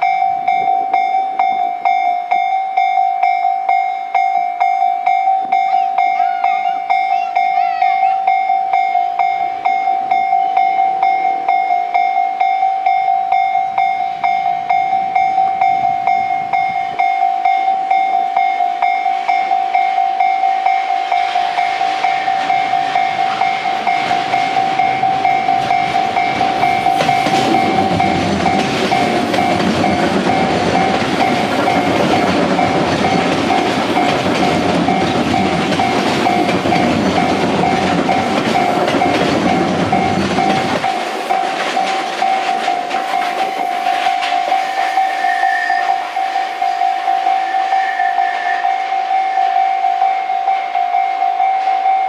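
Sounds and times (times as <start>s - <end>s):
electric train passing: 0.0s - 52.0s
level-crossing bell ringing: 0.0s - 52.0s
wheels clacking over rail joints: 18.8s - 45.2s.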